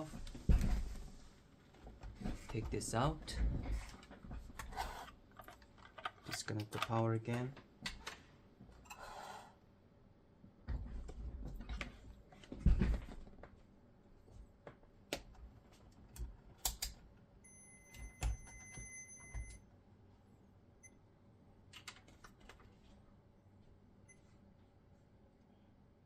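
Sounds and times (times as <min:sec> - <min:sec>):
hands handling console parts: 0:00.0 - 0:08.8.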